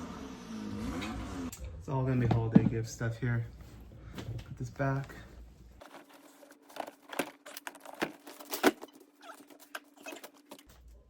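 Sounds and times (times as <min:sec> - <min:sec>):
items rummaged in a box: 0:04.8 - 0:11.0.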